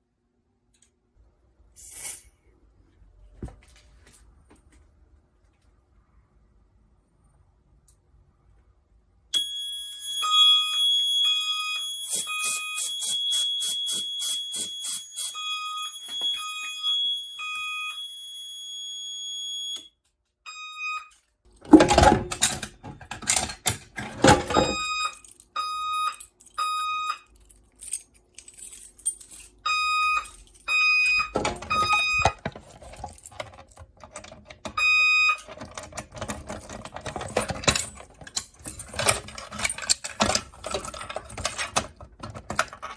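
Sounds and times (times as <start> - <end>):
continuous high tone: 9.4 - 19.8
fire alarm short beeps: 9.4 - 21.2, 24.5 - 27.3, 29.6 - 32.4, 34.8 - 35.4
rustling handling noise: 31.3 - 34.6, 35.4 - 42.9.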